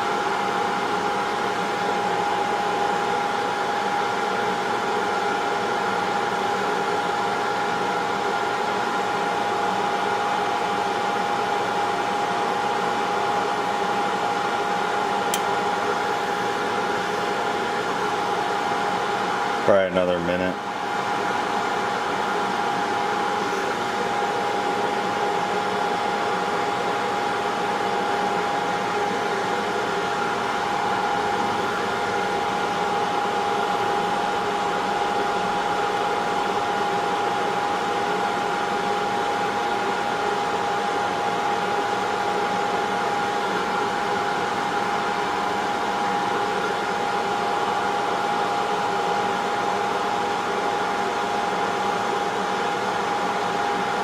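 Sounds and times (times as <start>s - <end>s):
fan whine: 0.0s - 54.0s
hot air blower rushing: 22.3s - 35.8s.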